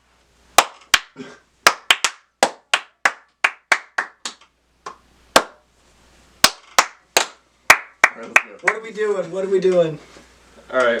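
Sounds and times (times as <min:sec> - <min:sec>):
sharp claps: 0:00.6 - 0:05.7, 0:06.4 - 0:08.9.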